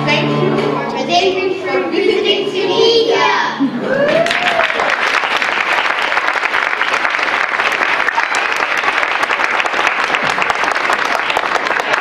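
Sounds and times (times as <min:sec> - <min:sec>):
children applauding: 0:03.8 - 0:12.0.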